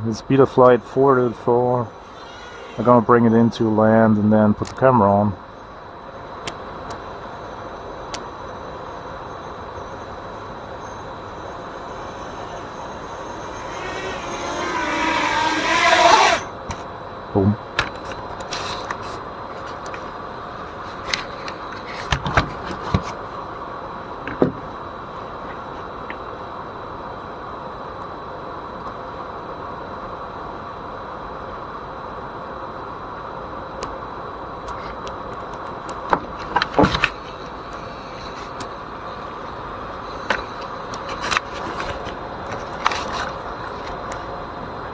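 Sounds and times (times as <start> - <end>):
drone motors and propellers: 1.8 - 3.4, 10.8 - 16.8.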